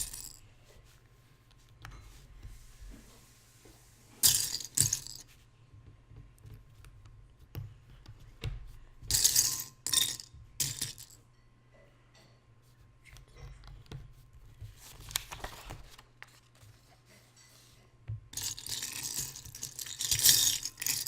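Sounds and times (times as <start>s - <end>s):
plastic pieces clattering: 18.4s - 21.0s.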